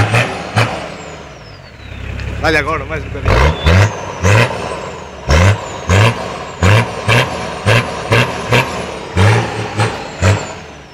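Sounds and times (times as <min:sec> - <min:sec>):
engine revving sharply: 0:00.0 - 0:10.9.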